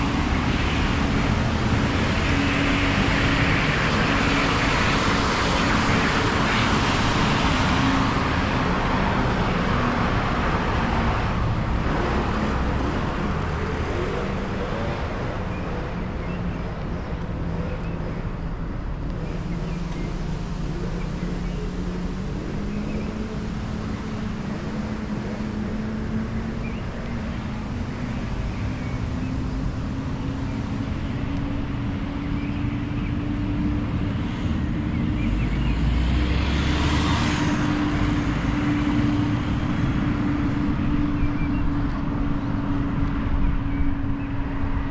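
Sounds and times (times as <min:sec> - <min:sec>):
vehicle engine humming: 0:00.0 - 0:44.9
car passing by: 0:33.6 - 0:40.8.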